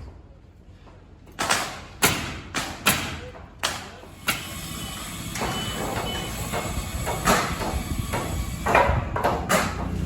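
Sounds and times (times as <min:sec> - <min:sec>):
sharp knocks and thuds: 0:05.4 - 0:10.0.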